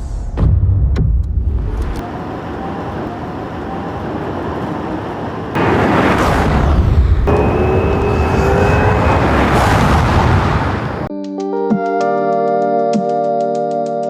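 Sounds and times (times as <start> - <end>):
heavy low rumble: 1.5 - 11.1
road and wind noise: 1.6 - 11.1.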